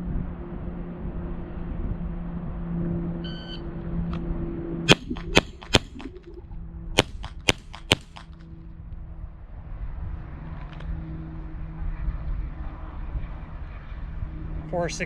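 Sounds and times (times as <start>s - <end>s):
shot timer beep: 4.9s - 8.2s
low hum: 4.9s - 8.4s
pistol shots: 7.0s - 8.3s.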